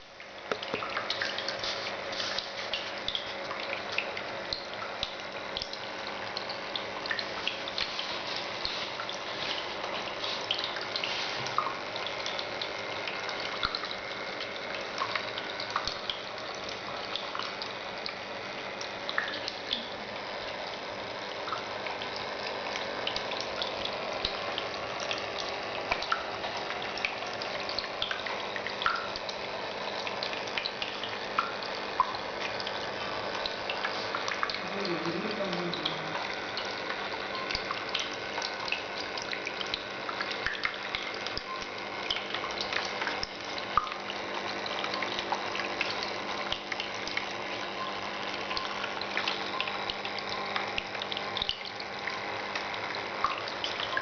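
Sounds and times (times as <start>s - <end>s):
water drips and plinks: 0.0s - 54.0s
fountain water splashing: 33.2s - 36.4s.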